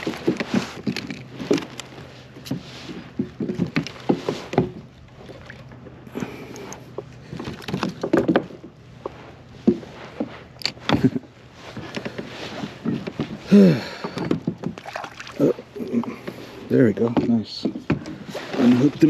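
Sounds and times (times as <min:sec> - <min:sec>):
knocks and rattles on plastic kayak: 0:00.0 - 0:06.0, 0:06.9 - 0:19.0.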